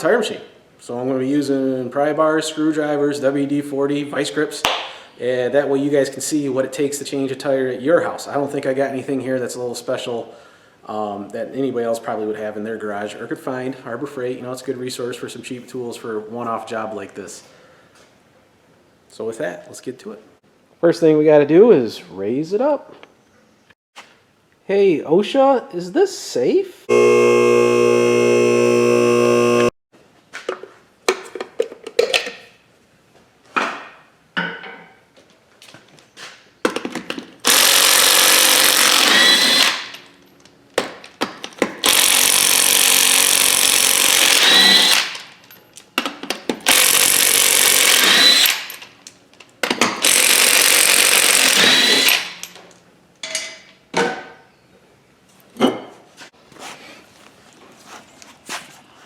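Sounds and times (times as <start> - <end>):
power tool whining: 26.9 - 29.8, 37.5 - 39.8, 41.9 - 45.2, 46.7 - 48.7, 50.0 - 52.4.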